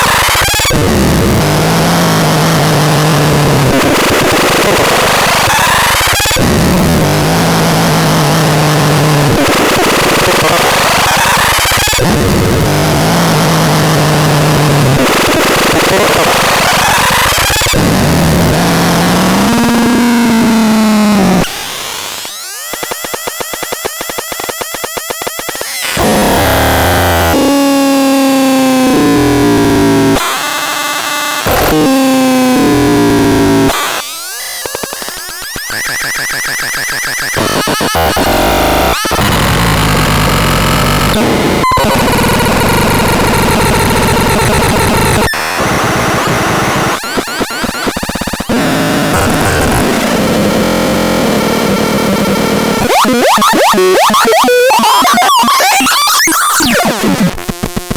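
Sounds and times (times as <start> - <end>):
harsh electronic noise drone: 0.0 - 57.9.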